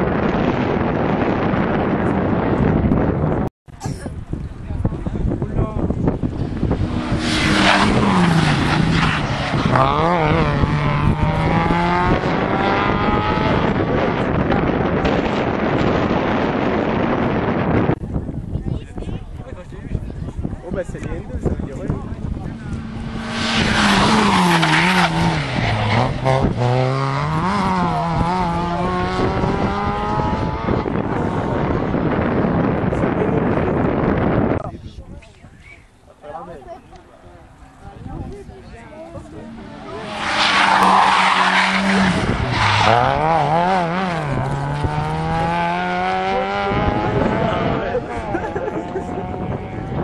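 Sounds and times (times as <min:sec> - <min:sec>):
car engine revving: 0:06.1 - 0:16.2, 0:22.2 - 0:32.9, 0:39.1 - 0:50.0
rushing noise: 0:22.6 - 0:28.7.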